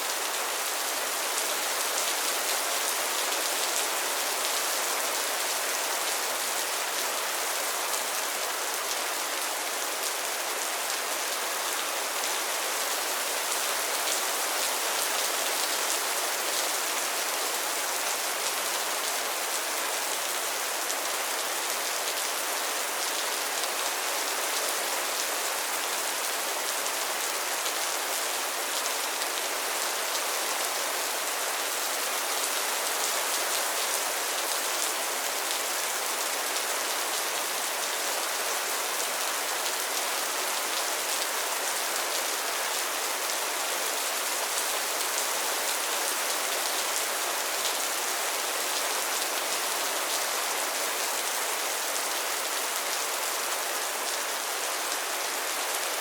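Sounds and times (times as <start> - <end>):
rain falling on a pond: 0.0 - 56.0.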